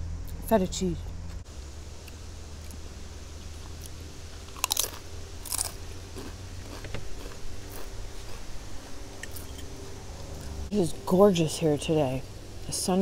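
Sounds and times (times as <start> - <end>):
low rumble: 0.0 - 11.1
chewing: 3.4 - 10.6
crisp crunching bites: 3.6 - 8.4.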